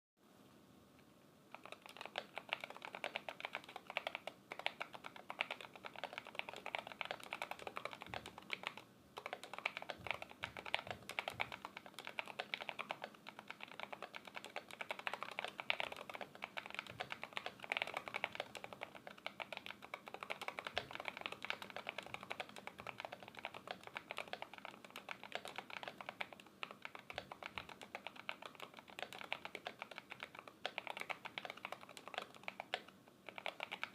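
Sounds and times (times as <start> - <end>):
fast mechanical keyboard typing: 1.5 - 33.9.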